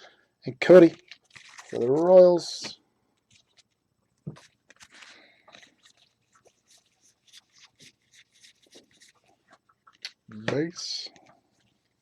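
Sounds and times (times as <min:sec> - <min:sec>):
trading cards rustling and clicking: 0:00.7 - 0:12.0.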